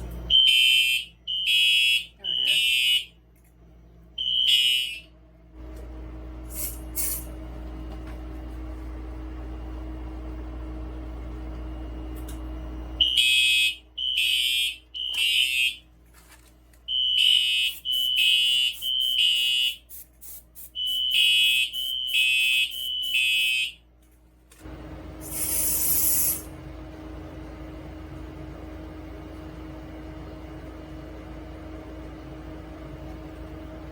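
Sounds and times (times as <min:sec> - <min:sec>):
fire alarm horn beeping: 0:00.3 - 0:03.2, 0:04.2 - 0:05.1, 0:13.0 - 0:15.8, 0:16.9 - 0:20.0, 0:20.6 - 0:23.8
short hiss: 0:25.2 - 0:26.5.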